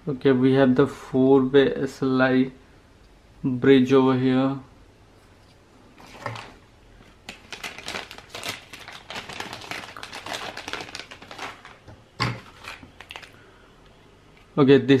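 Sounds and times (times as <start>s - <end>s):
packaging clicking and rustling: 6.0s - 13.4s.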